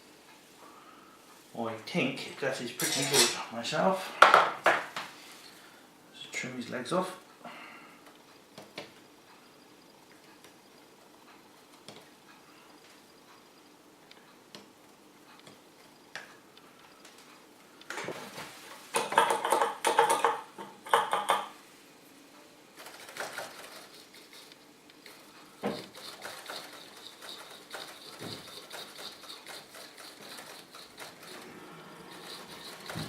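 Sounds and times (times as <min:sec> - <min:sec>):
metal tools clattering on workbench: 0:02.8 - 0:03.5, 0:19.0 - 0:21.4
clicks and knocks: 0:19.0 - 0:21.5.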